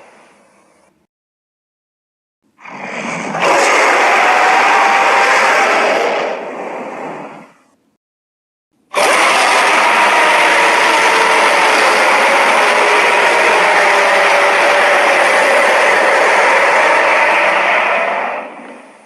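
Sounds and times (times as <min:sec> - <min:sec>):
harsh rasping monster roar: 0:02.6 - 0:06.6, 0:08.9 - 0:18.9.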